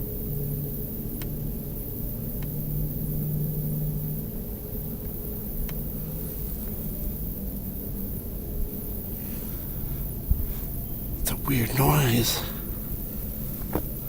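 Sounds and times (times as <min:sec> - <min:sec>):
faint clicks: 0:05.0 - 0:05.9.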